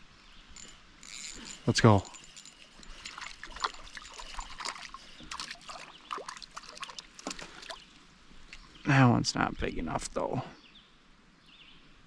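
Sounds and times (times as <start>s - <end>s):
water splashing and trickling: 1.7s - 9.0s.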